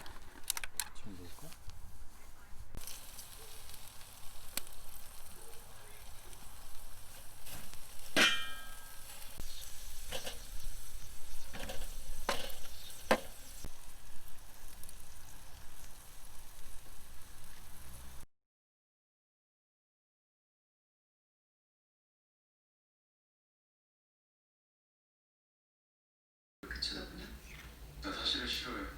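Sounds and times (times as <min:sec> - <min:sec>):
food sizzling on grill pan: 0:02.8 - 0:18.2
utensils clinking against pan: 0:07.5 - 0:09.4, 0:11.4 - 0:13.4.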